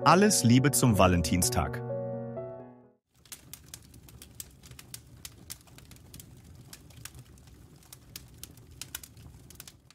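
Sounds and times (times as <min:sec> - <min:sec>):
low rumble of flames: 0:03.1 - 0:09.9
wood fire crackling: 0:03.1 - 0:09.9.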